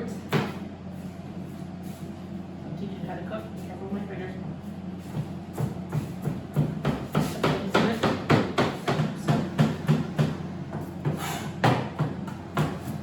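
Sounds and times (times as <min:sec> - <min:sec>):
knife chopping on cutting board: 0:05.6 - 0:13.0.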